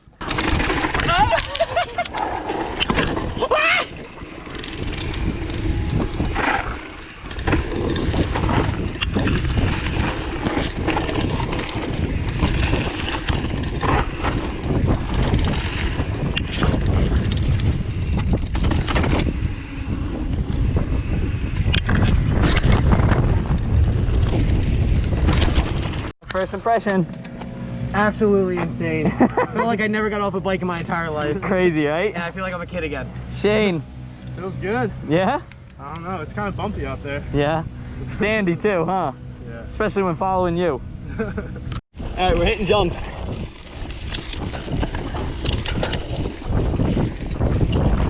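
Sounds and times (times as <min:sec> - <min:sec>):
wind buffeting microphone: 0:00.0 - 0:26.1, 0:26.7 - 0:48.0
mountain bike rumble and rattle: 0:00.0 - 0:48.0
bike knocking over ground: 0:00.2 - 0:03.4.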